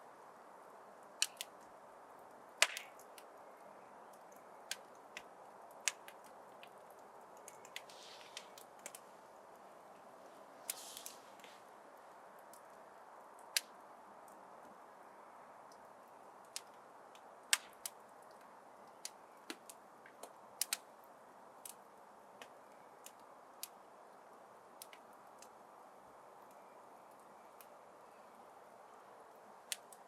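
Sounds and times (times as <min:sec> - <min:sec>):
soft hiss of flames: 0:00.0 - 0:30.0
wood fire pops and snaps: 0:01.2 - 0:01.6, 0:02.6 - 0:03.3, 0:04.0 - 0:09.1, 0:13.4 - 0:14.4, 0:16.4 - 0:20.9, 0:29.7 - 0:30.0.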